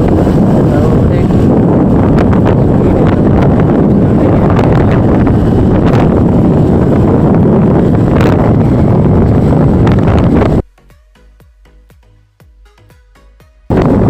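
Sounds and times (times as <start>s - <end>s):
wind buffeting microphone: 0.0s - 10.6s, 13.7s - 14.0s.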